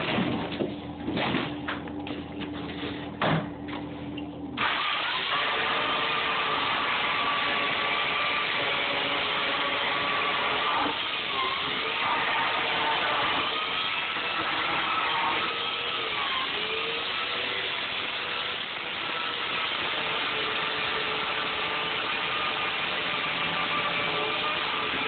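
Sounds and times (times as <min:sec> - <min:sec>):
low hum: 0:00.0 - 0:04.7
electric chainsaw cutting foam: 0:04.6 - 0:25.0.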